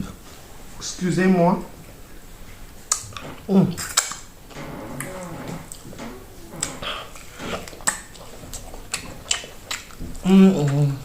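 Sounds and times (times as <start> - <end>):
wet chewing and lip smacks: 6.6 - 11.0.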